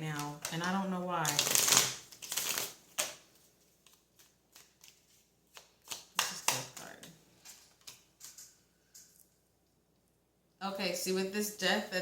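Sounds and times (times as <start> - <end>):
cards being shuffled: 0.2 - 8.5.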